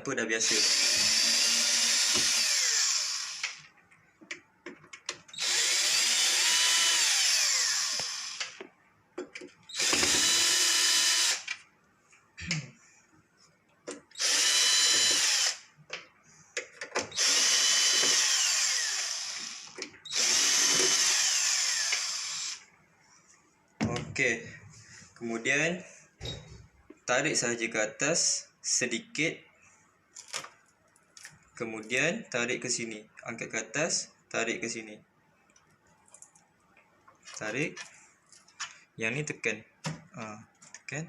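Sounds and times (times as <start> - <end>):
power drill driving screws: 0.5 - 3.6, 5.3 - 8.6, 9.7 - 11.5, 14.1 - 15.7, 17.1 - 22.6.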